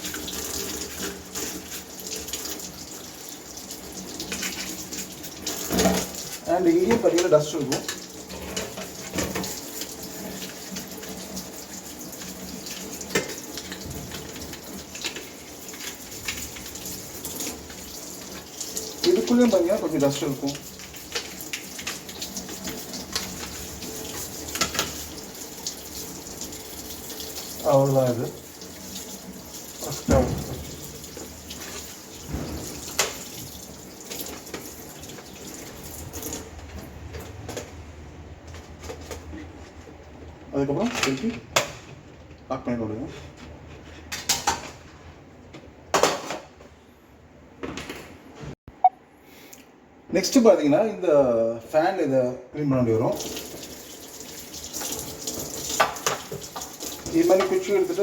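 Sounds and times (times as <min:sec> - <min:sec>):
tap water running: 0:00.0 - 0:37.7, 0:53.0 - 0:58.0.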